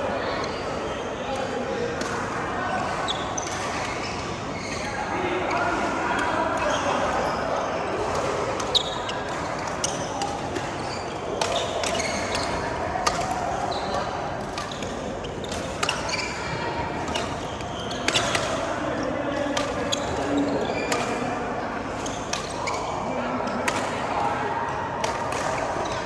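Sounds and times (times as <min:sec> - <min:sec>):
shoe squeaks on court floor: 0:02.7 - 0:05.6, 0:06.6 - 0:07.6, 0:08.6 - 0:14.0, 0:14.6 - 0:18.7, 0:22.0 - 0:23.0
racket striking shuttlecock: 0:08.0 - 0:16.4, 0:19.6 - 0:20.2.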